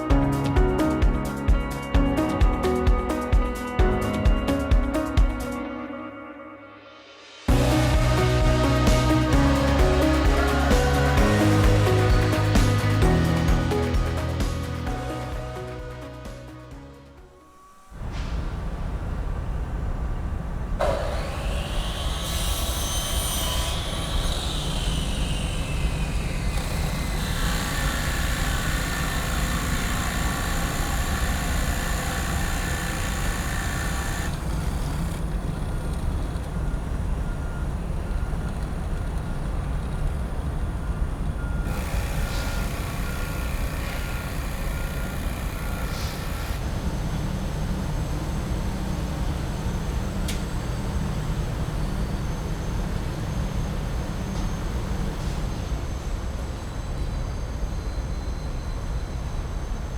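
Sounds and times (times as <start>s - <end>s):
falling whine: 17.3s - 59.9s
heavy machinery engine rumble: 17.8s - 58.0s.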